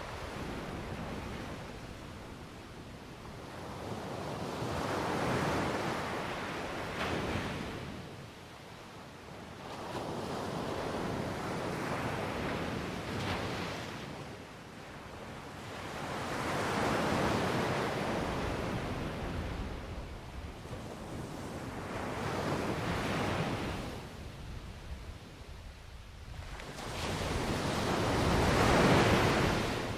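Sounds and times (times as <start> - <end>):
ocean surf breaking: 26.8 - 29.9.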